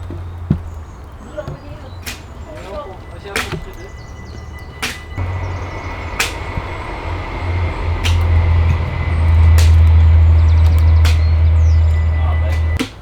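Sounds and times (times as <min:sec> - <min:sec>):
low rumble: 0:02.9 - 0:12.8.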